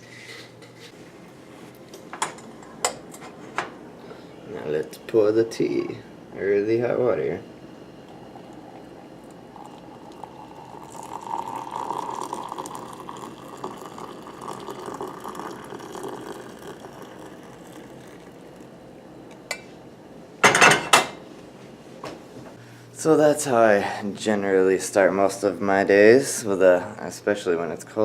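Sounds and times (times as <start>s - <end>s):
hot water pouring into mug: 8.1s - 18.8s.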